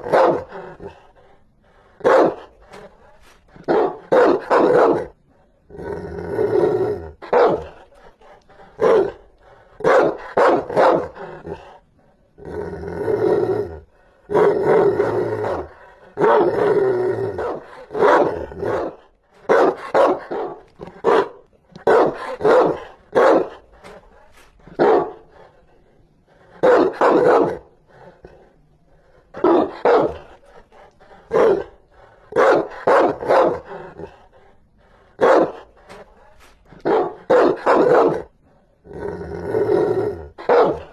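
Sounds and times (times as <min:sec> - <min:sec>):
dog barking fiercely: 0:00.0 - 0:01.0, 0:02.0 - 0:02.8, 0:03.5 - 0:05.2, 0:07.1 - 0:08.1, 0:08.7 - 0:11.6, 0:14.3 - 0:23.7, 0:24.6 - 0:25.4, 0:26.5 - 0:27.7, 0:29.3 - 0:30.4, 0:31.1 - 0:34.2, 0:35.2 - 0:36.0, 0:36.7 - 0:38.3, 0:40.3 - 0:40.9.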